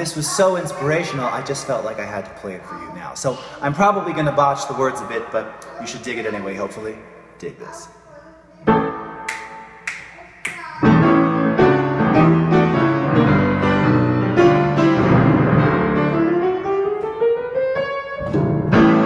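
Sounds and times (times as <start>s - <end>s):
jazz piano music: 10.8s - 19.0s.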